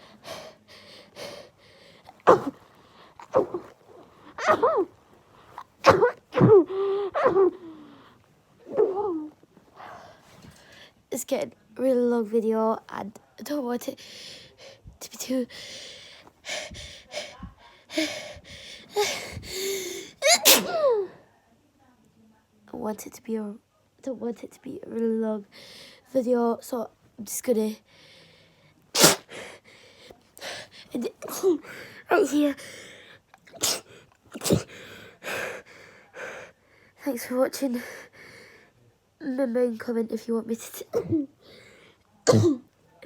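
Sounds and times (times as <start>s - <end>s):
person sneezing: 2.2s - 2.6s, 3.2s - 3.7s, 4.4s - 4.9s, 5.6s - 7.7s, 17.9s - 21.0s, 29.0s - 29.6s, 33.5s - 35.6s, 42.2s - 42.6s
woman gasping: 15.5s - 20.5s.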